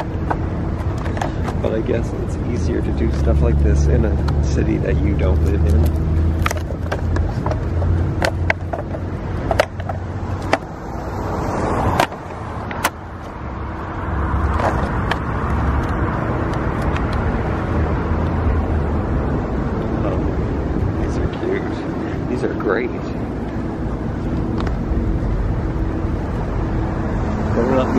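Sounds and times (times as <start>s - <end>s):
car passing: 0.0s - 27.9s
low engine rumble: 0.0s - 27.9s.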